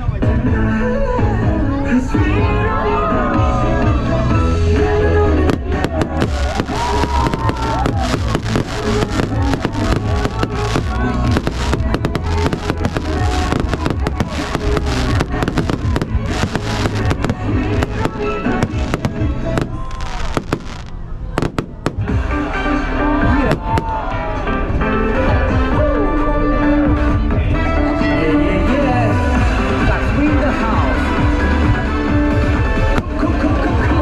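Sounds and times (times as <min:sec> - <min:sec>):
loud music with singing: 0:00.0 - 0:34.0
fireworks bangs and crackles: 0:04.8 - 0:22.6, 0:23.2 - 0:24.4, 0:29.4 - 0:34.0.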